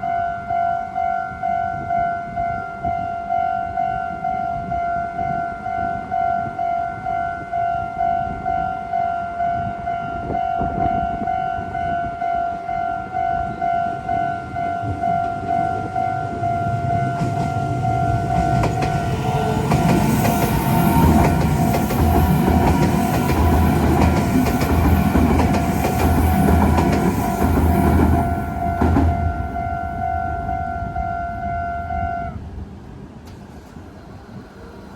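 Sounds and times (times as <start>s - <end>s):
railroad crossing bell ringing: 0.0s - 32.4s
train wheels clicking over rails: 14.8s - 29.6s.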